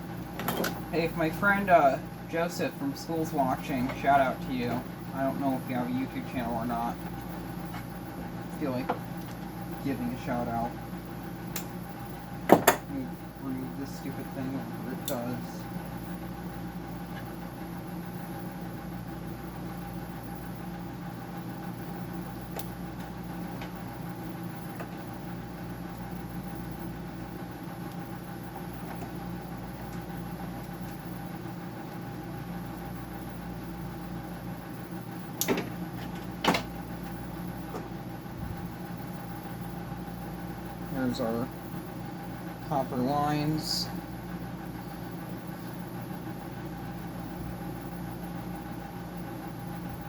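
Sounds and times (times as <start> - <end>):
machine humming: 0.0 - 50.0
sharp knocks of parts: 12.5 - 12.9, 35.4 - 36.7.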